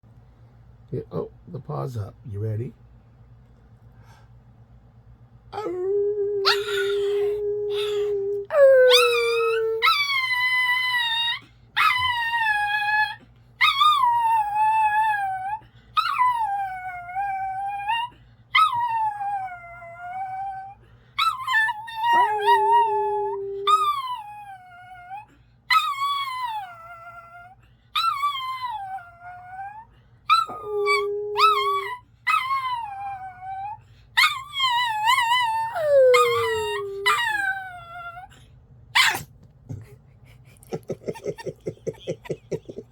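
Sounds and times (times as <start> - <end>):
dog howling: 5.6 - 38.3.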